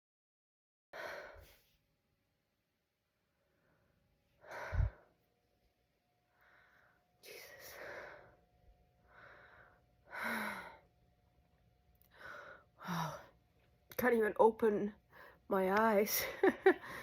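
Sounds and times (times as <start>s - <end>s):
woman breathing heavily and gasping: 1.0s - 1.6s, 3.5s - 5.2s, 6.3s - 11.0s, 12.0s - 13.4s, 16.3s - 17.0s.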